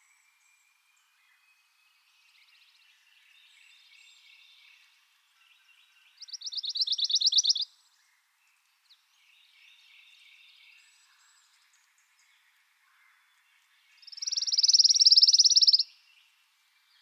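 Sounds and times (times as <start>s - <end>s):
bird singing a trill: 0.0s - 7.7s, 13.9s - 17.0s.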